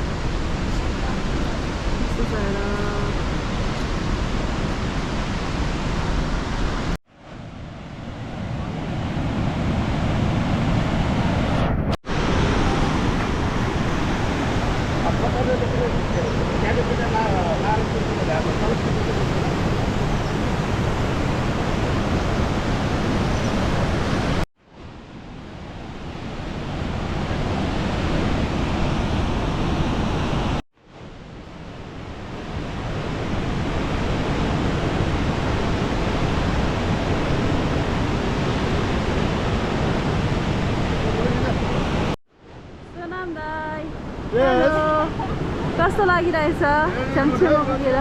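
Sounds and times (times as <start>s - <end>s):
waterfall rushing: 8.3s - 24.4s, 32.6s - 42.2s.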